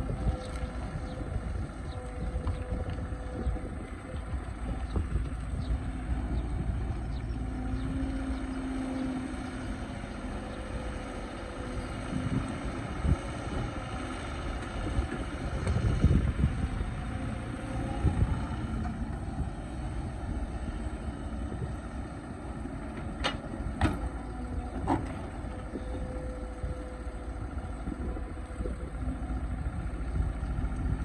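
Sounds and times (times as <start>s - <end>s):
excavator engine rumbling: 0.0s - 31.0s
knocks and clunks: 22.9s - 25.4s.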